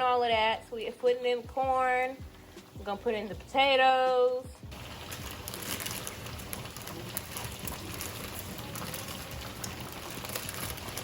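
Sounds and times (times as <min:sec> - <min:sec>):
water boiling hard: 0:04.6 - 0:11.0.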